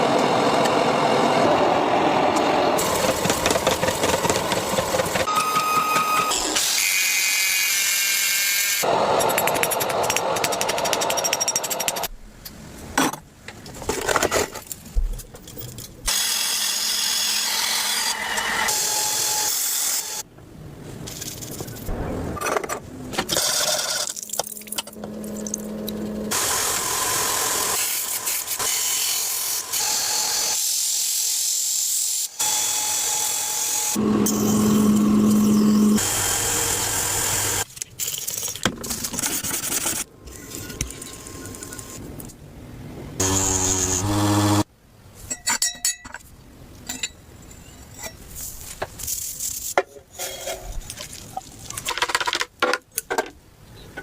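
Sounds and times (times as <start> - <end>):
power tool whine: 32.4 - 37.6, 43.2 - 44.7
power tool grinding: 33.6 - 37.6, 43.2 - 44.7.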